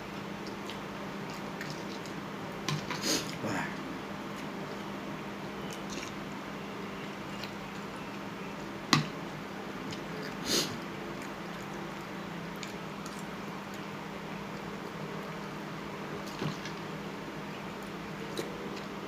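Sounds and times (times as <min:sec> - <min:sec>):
steady low hum: 0:00.0 - 0:19.0
quiet chewing: 0:00.4 - 0:06.2, 0:09.8 - 0:15.5, 0:17.5 - 0:19.0.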